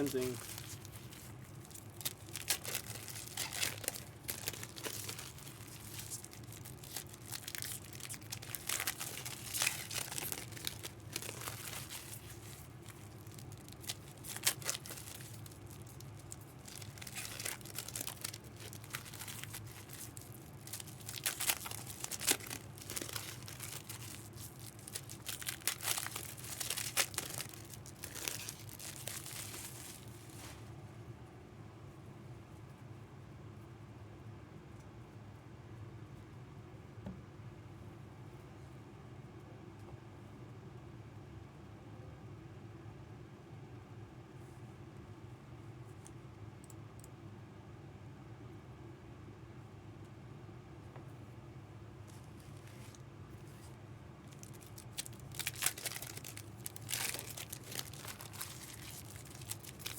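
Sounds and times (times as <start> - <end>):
card pack wrappers crinkling: 0.0 - 30.6, 53.6 - 59.9.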